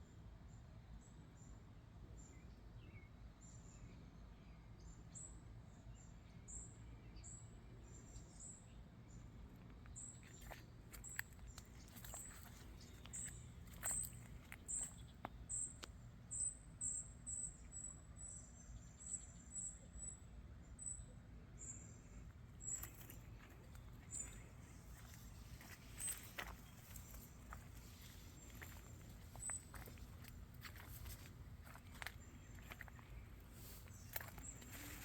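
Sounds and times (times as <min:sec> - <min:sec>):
low steady hum: 0:20.2 - 0:35.0.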